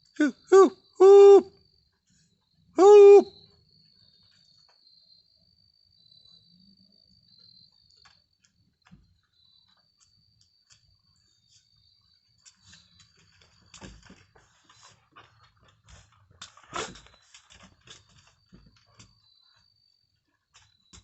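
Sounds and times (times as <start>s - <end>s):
cricket trilling: 0.1s - 8.2s
loud hoot: 0.2s - 1.5s, 2.8s - 3.3s.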